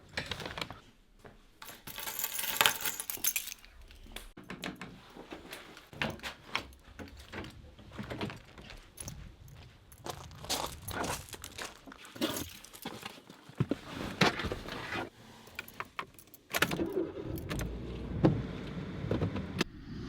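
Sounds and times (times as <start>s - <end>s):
jangling rattling: 1.7s - 4.1s.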